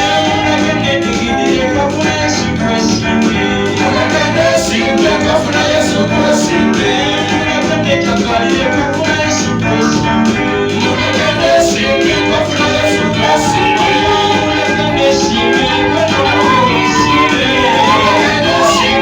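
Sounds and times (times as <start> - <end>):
percussion steady beat: 0.0 - 19.0
worship singing over instruments: 0.0 - 19.0.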